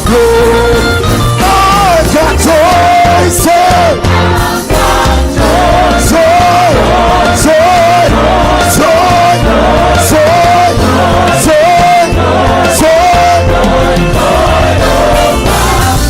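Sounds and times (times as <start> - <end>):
bass and drums: 0.0 - 16.0
gospel worship music: 0.0 - 16.0
person singing: 0.0 - 16.0
choir singing: 1.4 - 16.0.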